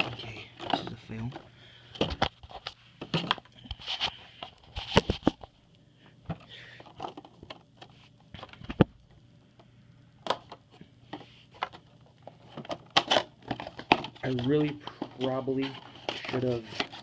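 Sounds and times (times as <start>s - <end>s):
packaging plastic and cardboard clicks: 12.5s - 17.0s.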